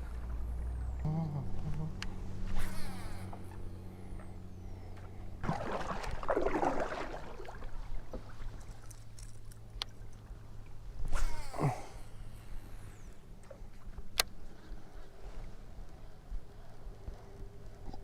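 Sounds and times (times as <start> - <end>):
low hum: 0.0 - 18.0
water splashing against kayak: 5.0 - 9.4.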